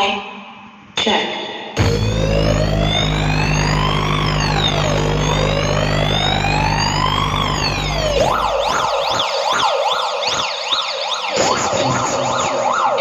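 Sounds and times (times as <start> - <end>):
low thumps: 1.8 - 9.2
steady bass: 1.8 - 9.3
siren wail and yelp: 1.8 - 13.0.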